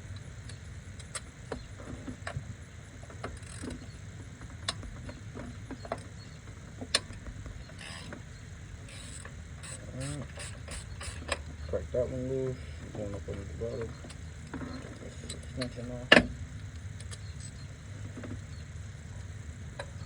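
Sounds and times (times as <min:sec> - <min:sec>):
ratchet clicking: 0:07.8 - 0:08.2, 0:08.9 - 0:11.5.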